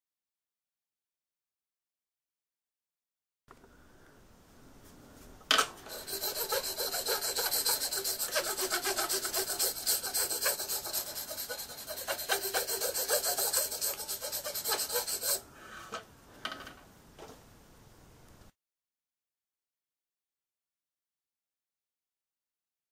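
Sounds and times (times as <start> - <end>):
hand file filing steel: 5.9 - 15.4.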